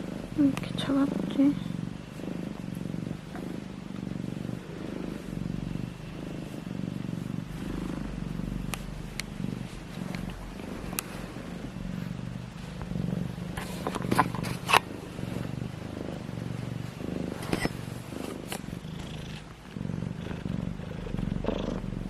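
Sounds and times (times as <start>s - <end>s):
cat purring: 0.0s - 22.0s
rustling and sharp clicks: 8.6s - 11.3s.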